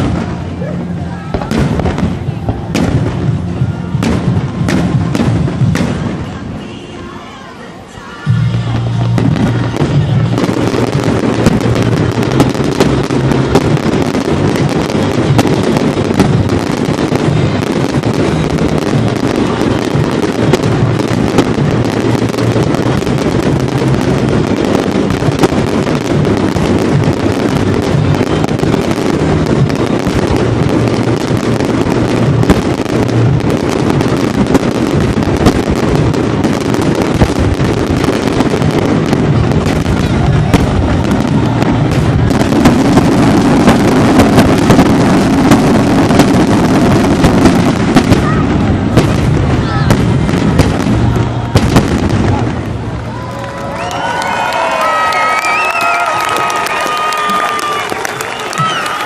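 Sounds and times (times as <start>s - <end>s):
music soundtrack: 0.0s - 53.6s
fireworks bangs and crackling: 0.0s - 59.0s.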